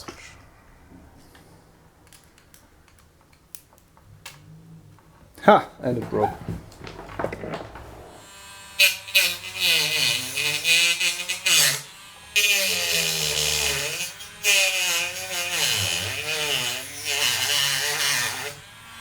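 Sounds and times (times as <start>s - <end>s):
rotary tool cutting plastic: 8.8s - 19.0s.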